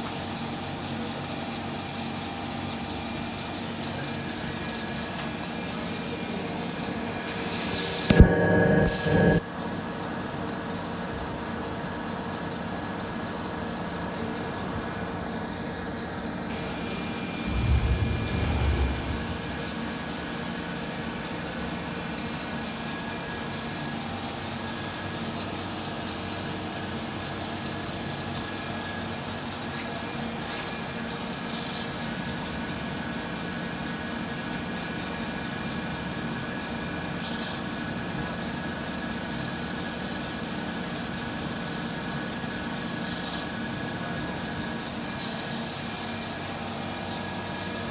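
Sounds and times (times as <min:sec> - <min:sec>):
lathe hum and whine: 0:02.4 - 0:09.4, 0:16.5 - 0:20.8
heavy low thud: 0:17.4 - 0:20.4.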